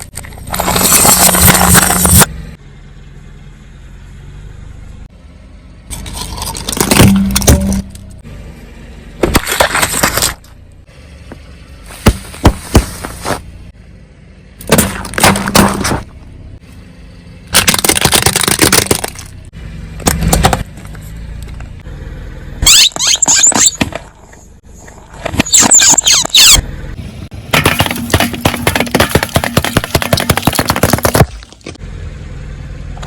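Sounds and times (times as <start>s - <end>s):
objects crunching under car tyres: 0.0s - 2.3s, 5.9s - 8.2s, 9.2s - 10.6s, 11.9s - 13.6s, 14.6s - 16.4s, 17.5s - 21.8s, 22.6s - 26.6s, 27.3s - 31.8s.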